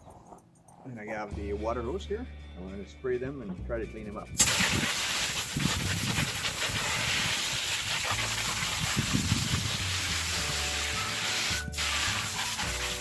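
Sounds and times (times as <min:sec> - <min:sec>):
garden hose spraying water: 0:04.4 - 0:13.0.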